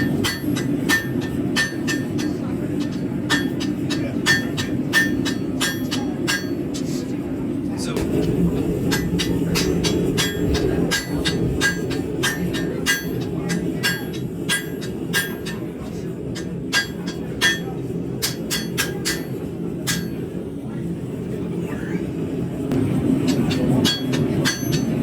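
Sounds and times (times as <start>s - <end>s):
hammer ringing on hot steel: 0.0s - 6.9s, 8.0s - 20.4s, 22.7s - 25.0s
steady low rumble: 7.1s - 18.2s, 22.2s - 24.4s.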